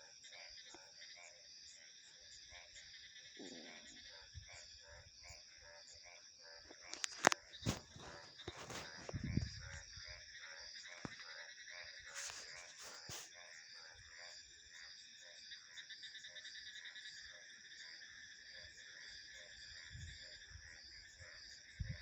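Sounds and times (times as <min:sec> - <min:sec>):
frogs giving pulsed calls: 0:00.0 - 0:22.0
insects trilling: 0:00.0 - 0:22.0.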